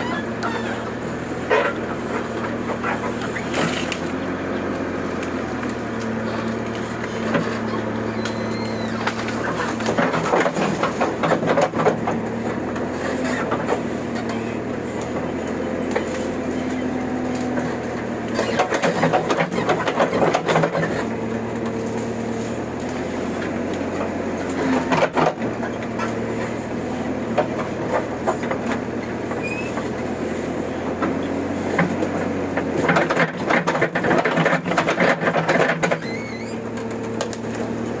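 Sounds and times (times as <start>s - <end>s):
diesel engine running under load: 0.0s - 38.0s
wood and roots cracking: 0.0s - 38.0s.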